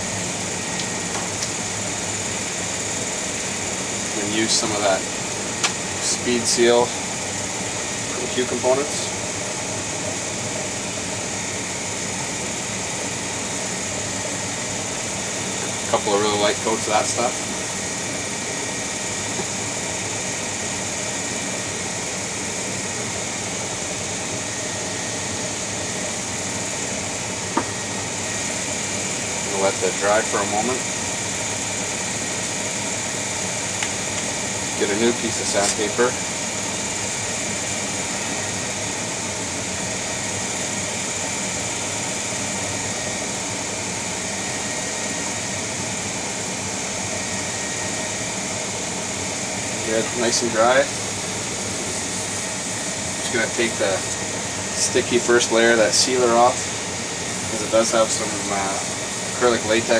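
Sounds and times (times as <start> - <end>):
lathe motor hissing and humming: 0.0 - 59.9
faint high whine: 47.1 - 59.9.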